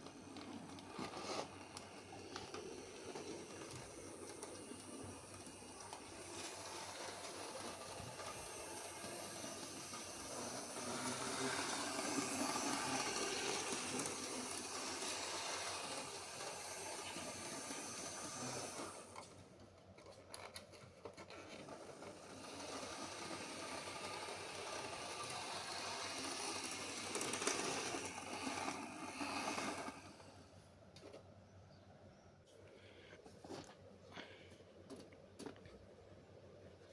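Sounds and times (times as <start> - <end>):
model train whirring on track: 0.0 - 19.5, 21.2 - 30.6.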